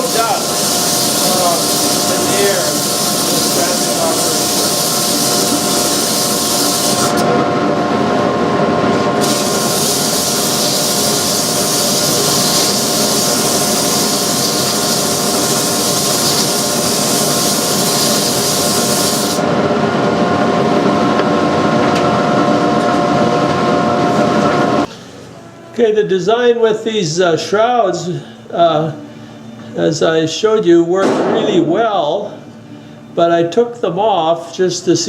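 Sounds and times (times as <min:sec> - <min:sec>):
sandpaper hissing on spinning wood: 0:00.0 - 0:07.2, 0:09.2 - 0:19.4
lathe whining: 0:00.0 - 0:24.9
dust collector running: 0:00.0 - 0:25.1.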